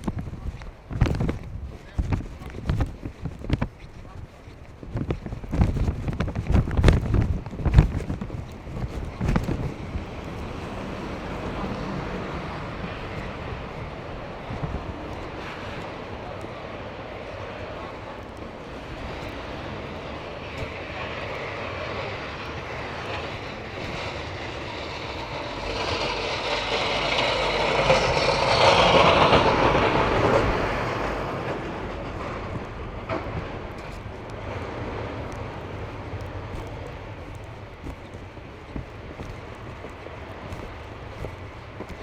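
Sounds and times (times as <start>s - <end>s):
background traffic: 0.0s - 42.0s
wind: 0.0s - 42.0s
vehicle passing by: 9.8s - 16.3s, 19.7s - 33.7s.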